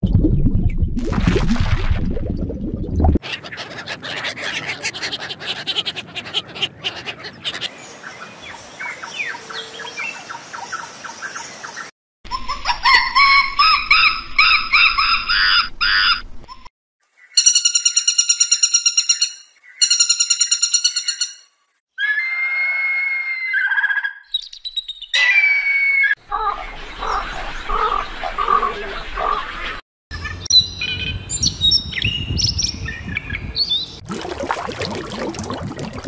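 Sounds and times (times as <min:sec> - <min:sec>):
birds chirping and twittering: 0:03.2 - 0:12.6, 0:23.6 - 0:25.4, 0:26.0 - 0:34.0.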